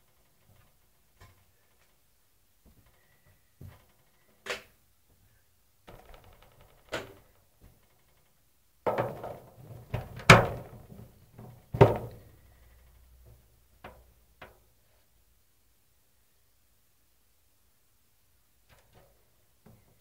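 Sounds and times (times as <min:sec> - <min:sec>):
knocks and thuds: 0:11.7 - 0:12.2.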